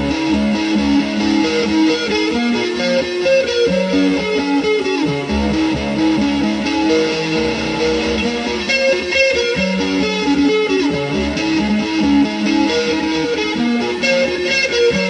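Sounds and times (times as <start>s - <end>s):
electric guitar and bass music: 0.0s - 15.0s.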